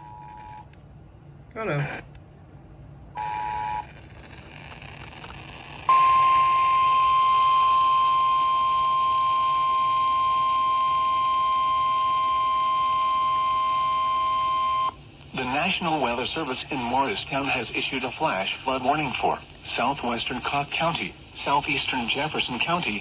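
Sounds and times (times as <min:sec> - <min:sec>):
steady warning alarm beep: 0:05.9 - 0:15.8.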